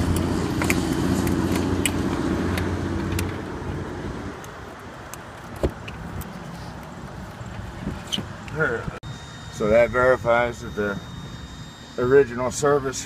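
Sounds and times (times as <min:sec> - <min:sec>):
hvac equipment humming: 0:08.4 - 0:13.0.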